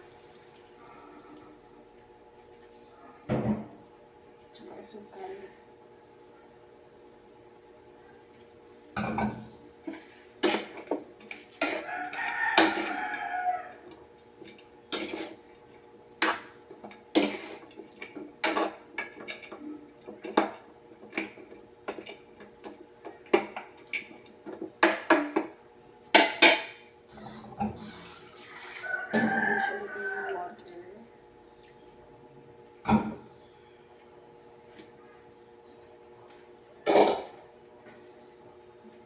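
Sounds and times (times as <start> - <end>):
utensil scraping a cooking pot: 9.8 - 13.3, 14.4 - 15.4, 17.1 - 19.5, 27.1 - 29.1
rooster crowing: 11.7 - 14.0, 28.4 - 30.6.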